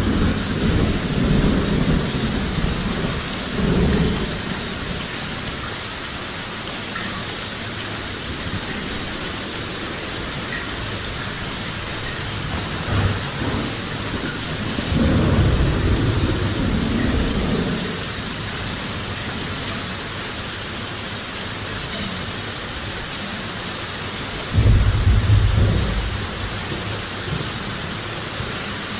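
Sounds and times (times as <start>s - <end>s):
low rumble of thunder: 0.0s - 5.6s, 8.3s - 19.6s, 24.5s - 28.0s
steady rain falling: 0.0s - 28.9s.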